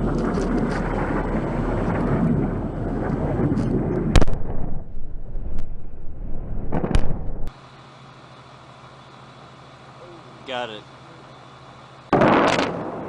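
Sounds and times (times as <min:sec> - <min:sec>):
sharp crack: 0:00.0 - 0:07.6, 0:12.1 - 0:13.0
fighter jet rumbling overhead: 0:00.0 - 0:08.2.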